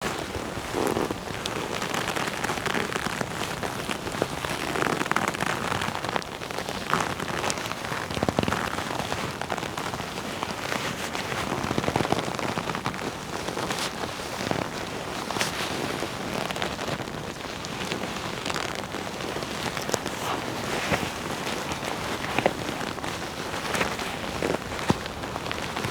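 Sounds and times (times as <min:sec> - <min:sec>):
leather creaking rustle: 0:00.0 - 0:25.9
sharp leather crackles: 0:00.0 - 0:25.9.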